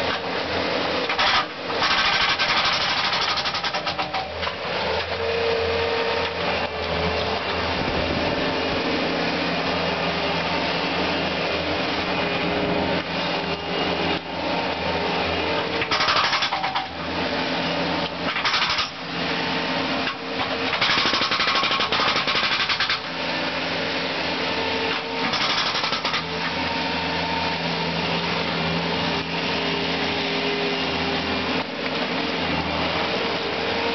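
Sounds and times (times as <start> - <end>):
engine drone: 0.0 - 33.9
concrete breaker hammering: 1.0 - 5.1, 15.6 - 17.2, 18.0 - 19.1, 20.0 - 23.2, 25.0 - 26.7.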